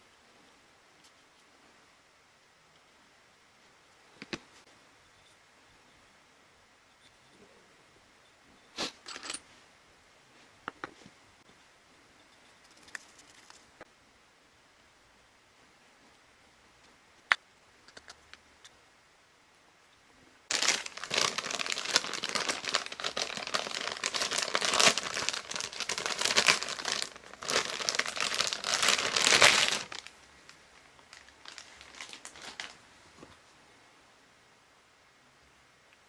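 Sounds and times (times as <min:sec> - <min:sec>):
crinkling crumpling handling noise: 0:20.5 - 0:33.4.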